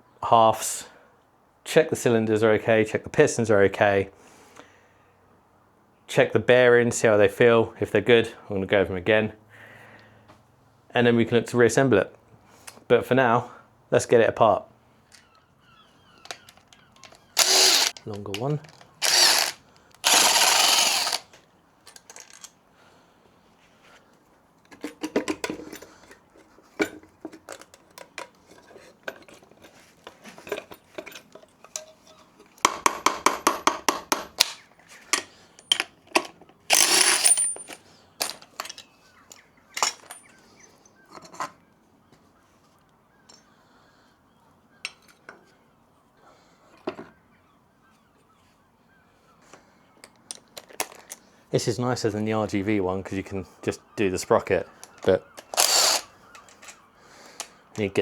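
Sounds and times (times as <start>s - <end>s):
metallic clinks of tools: 16.2s - 21.2s, 36.7s - 40.4s
power driver whirring: 16.3s - 21.3s, 36.7s - 37.6s, 55.4s - 56.4s.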